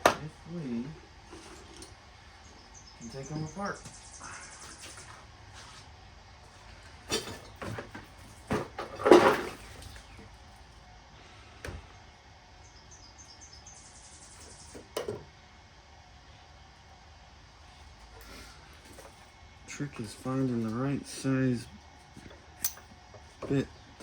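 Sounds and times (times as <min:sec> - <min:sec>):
metal tools clattering: 0:07.1 - 0:10.1.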